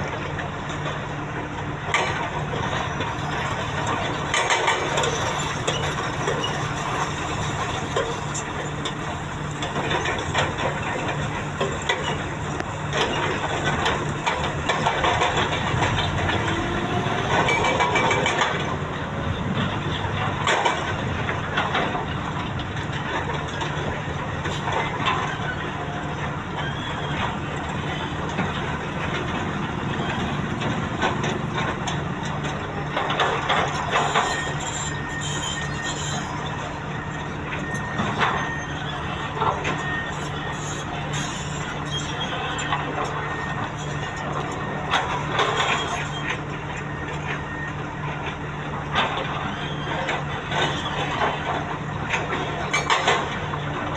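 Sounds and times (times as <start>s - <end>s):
diesel excavator engine running: 0.0s - 53.9s
metal squealing: 24.7s - 32.0s, 33.5s - 47.7s, 49.1s - 53.6s.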